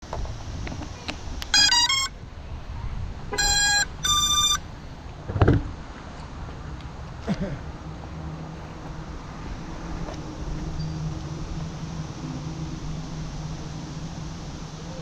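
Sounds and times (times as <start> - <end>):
electronic startup beeps: 1.5 - 2.1, 3.4 - 4.6.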